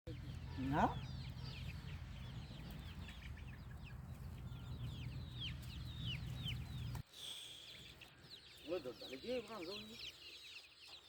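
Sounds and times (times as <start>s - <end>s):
steady low rumble: 0.1s - 7.0s
chicks peeping: 0.1s - 11.0s.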